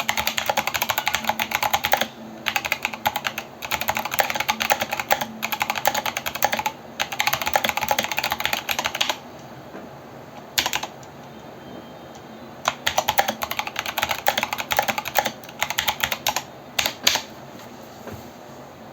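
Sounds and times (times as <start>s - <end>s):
mechanical keyboard typing: 0.0s - 9.2s, 10.6s - 11.1s, 12.6s - 17.3s.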